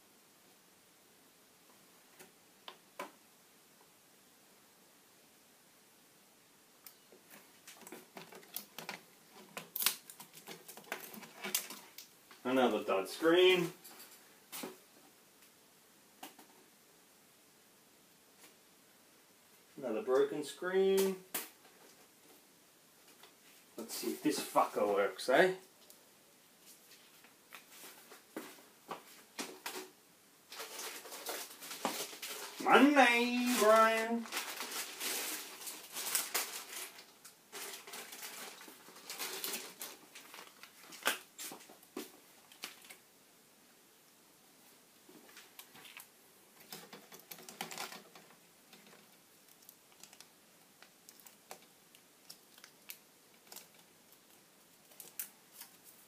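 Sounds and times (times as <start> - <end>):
soft rustling: 25.7 - 43.1, 44.6 - 56.0.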